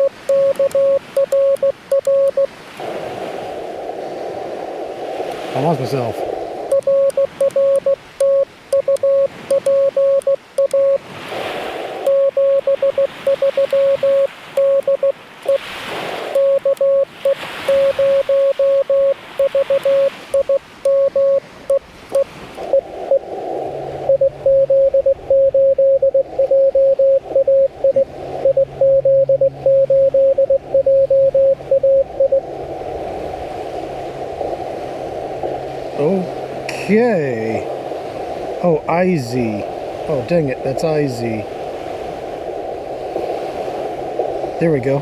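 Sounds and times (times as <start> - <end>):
morse code beeps: 0.0 - 2.5, 6.7 - 11.0, 12.0 - 23.2, 24.0 - 32.4
radio band noise hiss: 0.0 - 11.0, 11.8 - 25.0, 34.2 - 45.0.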